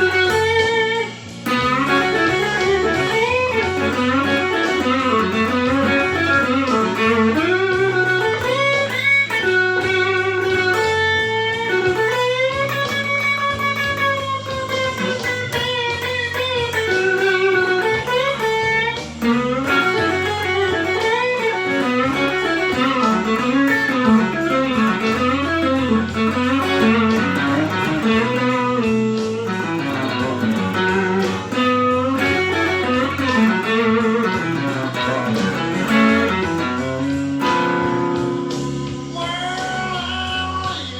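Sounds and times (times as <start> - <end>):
backing track with bass: 0.0 - 40.9
overdriven electric guitar blues lead: 0.0 - 40.9.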